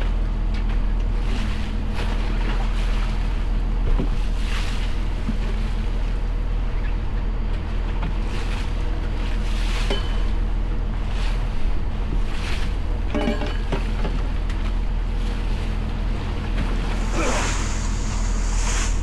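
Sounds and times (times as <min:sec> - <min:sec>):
boat engine running: 0:00.0 - 0:19.0
water wash: 0:16.2 - 0:19.0
wind on microphone: 0:16.8 - 0:19.0.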